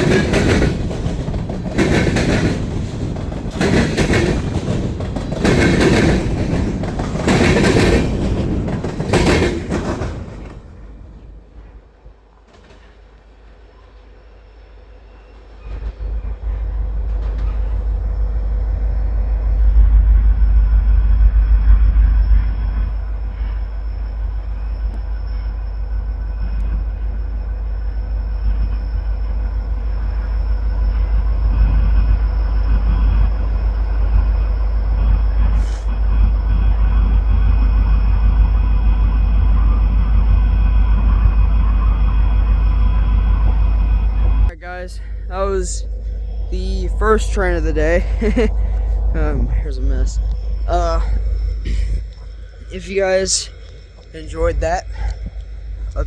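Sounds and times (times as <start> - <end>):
train wheels clattering over rail joints: 0.0 - 11.6, 12.3 - 13.6, 28.5 - 37.9, 45.4 - 49.4, 50.1 - 56.0
low steady train rumble: 0.0 - 56.0.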